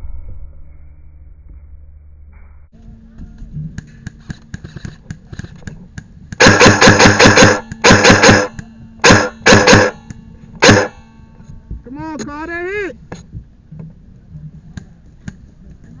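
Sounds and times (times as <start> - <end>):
airsoft gun firing bursts: 6.4 - 10.0, 10.6 - 11.0.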